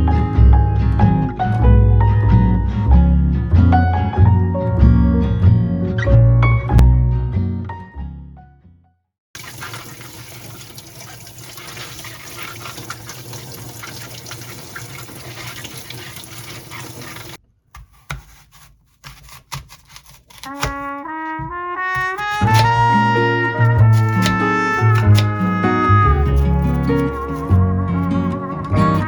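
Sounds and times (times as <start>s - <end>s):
running water hissing: 9.4s - 17.4s, 23.8s - 29.0s
music with clear notes: 22.4s - 29.0s.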